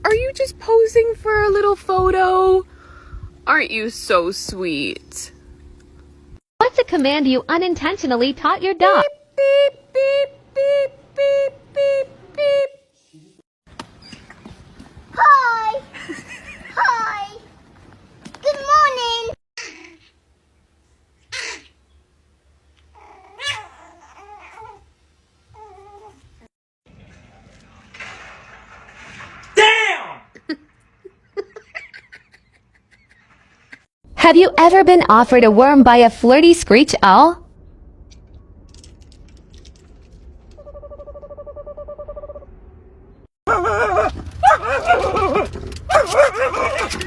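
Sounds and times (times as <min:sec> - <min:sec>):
owl trilling: 0:21.3 - 0:21.8
dog whining: 0:22.9 - 0:24.9, 0:25.5 - 0:26.5, 0:43.5 - 0:47.0.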